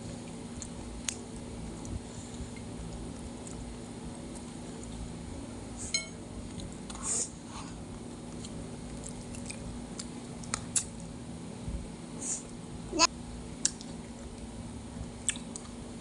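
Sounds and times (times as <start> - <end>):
steady low hum: 0.0 - 16.0
person chewing fried snacks: 8.3 - 11.0.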